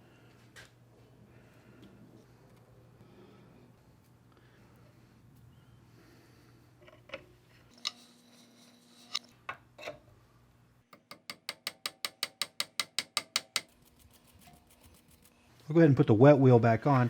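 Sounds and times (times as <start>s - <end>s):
ratchet clicking: 11.0s - 15.4s.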